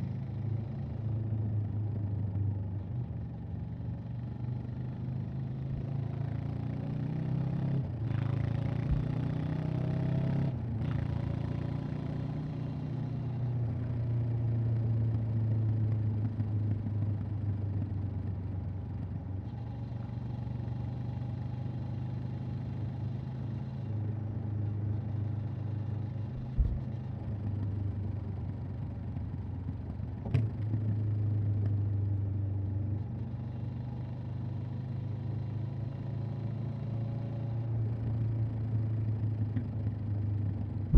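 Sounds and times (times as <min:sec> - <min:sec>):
motorcycle engine and exhaust: 0:00.0 - 0:40.9
low thump: 0:08.8 - 0:09.1, 0:26.4 - 0:26.8.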